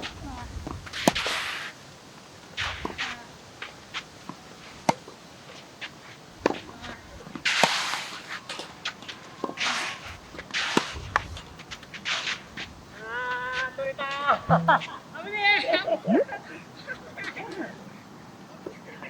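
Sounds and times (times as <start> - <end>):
racket striking ball: 1.0 - 1.3, 14.5 - 15.0
ball bouncing: 14.5 - 15.0.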